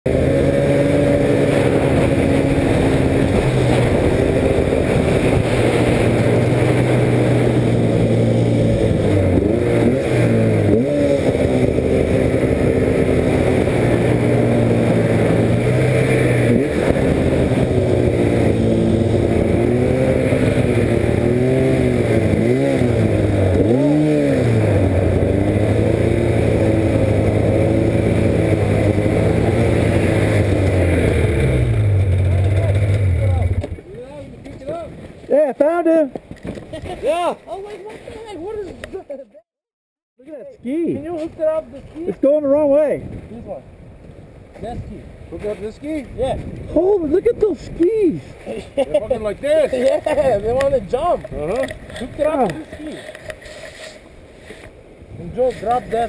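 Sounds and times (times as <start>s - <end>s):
snowmobile engine running: 0.1s - 35.8s, 46.2s - 54.2s, 55.1s - 56.0s.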